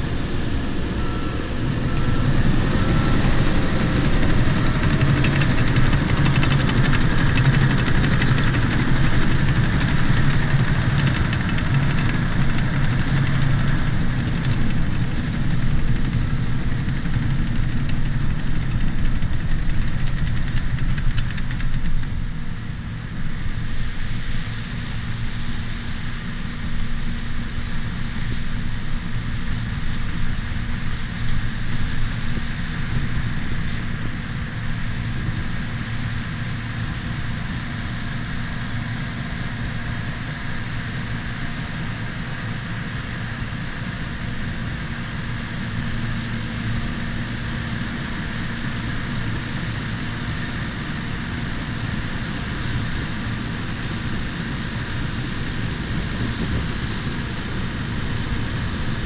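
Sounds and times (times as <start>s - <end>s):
diesel engine humming: 0.0s - 59.0s.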